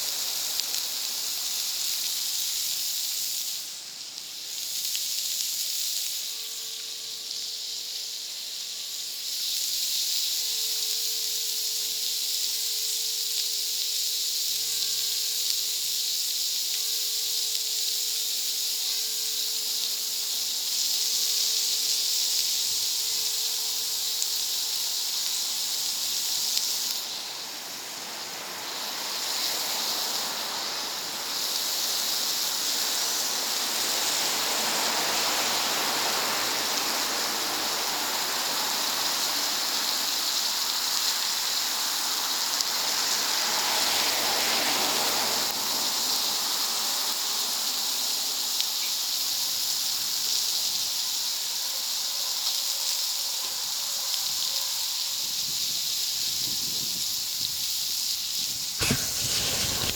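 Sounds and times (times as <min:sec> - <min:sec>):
food sizzling on a hot plate: 0:00.0 - 0:59.9
wood fire crackling: 0:58.4 - 0:59.9.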